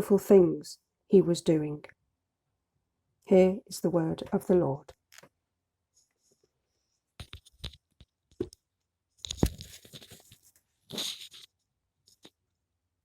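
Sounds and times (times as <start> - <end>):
rustling: 9.2 - 12.4.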